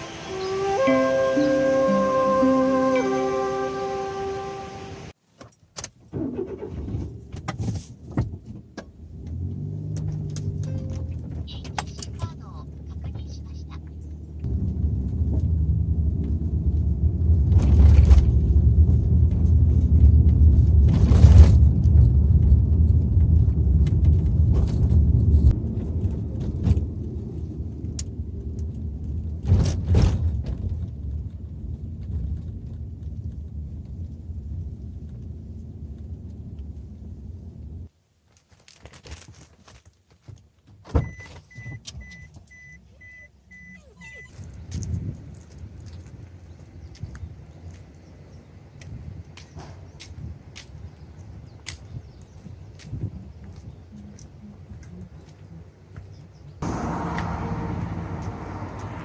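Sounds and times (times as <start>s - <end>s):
car engine hum: 0.0s - 5.2s, 8.8s - 37.9s, 53.9s - 59.0s
electronic beeps: 41.0s - 44.4s.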